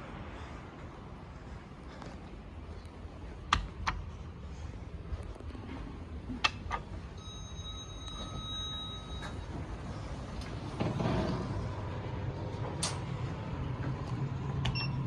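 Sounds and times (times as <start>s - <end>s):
mechanical noise of lift doors: 5.5s - 15.0s
steady electronic beep: 7.2s - 9.6s.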